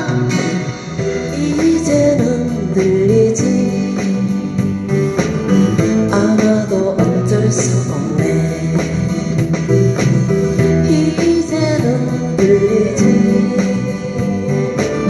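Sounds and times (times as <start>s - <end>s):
woman singing: 0.0s - 4.6s, 6.1s - 9.1s, 10.8s - 15.0s.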